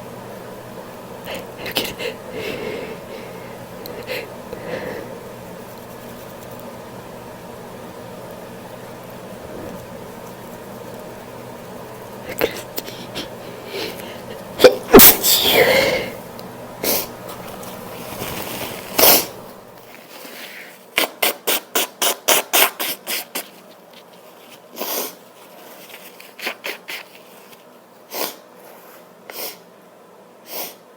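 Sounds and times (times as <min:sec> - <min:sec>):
woman sneezing: 0:14.6 - 0:16.2.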